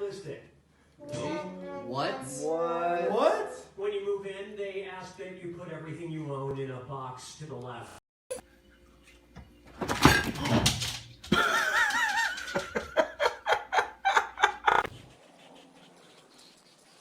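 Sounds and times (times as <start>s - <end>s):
person laughing in short bursts: 13.8s - 14.9s.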